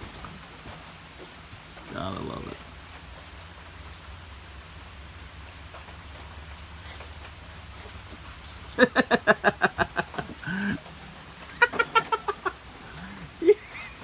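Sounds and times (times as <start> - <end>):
steady rain falling: 0.0 - 14.0
hen cackling: 8.5 - 14.0.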